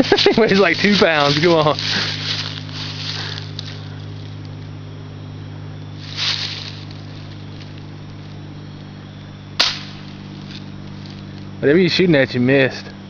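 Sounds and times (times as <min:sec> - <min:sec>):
short rustling hiss: 0:00.0 - 0:04.5, 0:06.0 - 0:08.4
steady low hum: 0:00.0 - 0:13.0
bb gun firing crack: 0:09.6 - 0:10.3.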